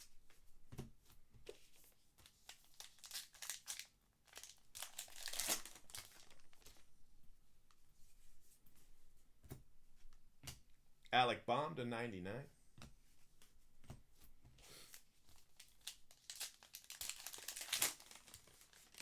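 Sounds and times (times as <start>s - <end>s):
plastic packaging crinkling: 2.5s - 6.9s, 15.4s - 19.0s.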